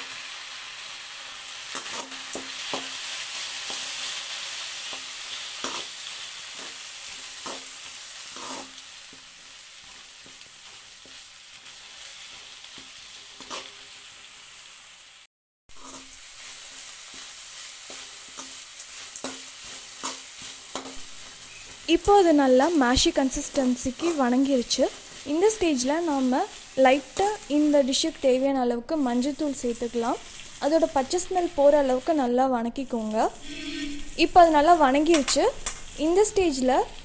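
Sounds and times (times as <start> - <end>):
vegetables sizzling in hot oil: 0.0 - 37.0
spatula scraping a pan: 7.4 - 8.8, 15.7 - 21.9.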